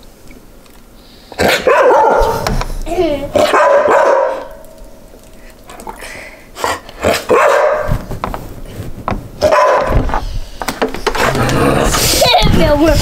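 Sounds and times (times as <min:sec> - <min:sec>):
dog barking: 0:01.4 - 0:02.5, 0:03.4 - 0:04.6, 0:07.0 - 0:08.0, 0:09.4 - 0:10.0.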